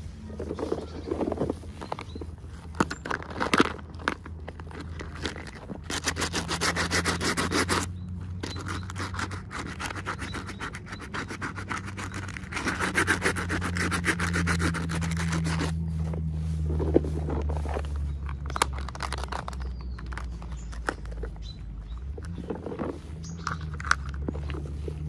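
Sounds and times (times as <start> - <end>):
rhythmic rubbing and scraping: 5.2 - 18.2.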